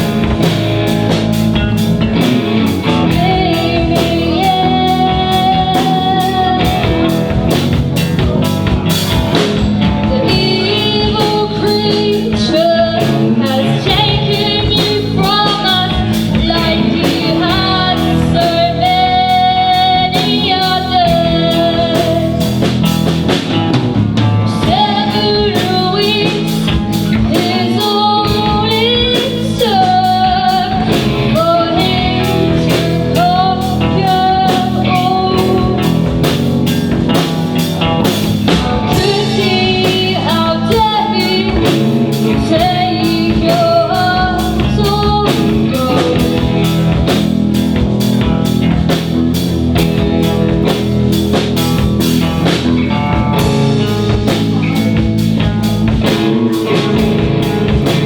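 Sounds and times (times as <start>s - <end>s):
drum kit: 0.0s - 58.0s
electric guitar: 0.0s - 58.0s
person singing: 2.1s - 23.0s, 24.4s - 47.3s.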